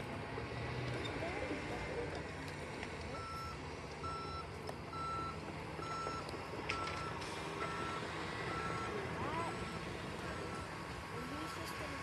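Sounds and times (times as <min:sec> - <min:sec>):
diesel engine rumble: 0:00.0 - 0:12.0
reversing alarm beeps: 0:03.2 - 0:11.0.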